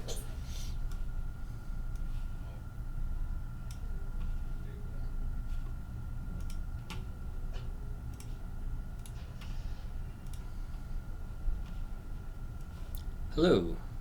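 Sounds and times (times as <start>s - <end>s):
steady low hum: 0.0s - 14.0s
light clicks and ticks: 6.4s - 7.0s, 7.6s - 8.4s, 10.2s - 10.5s.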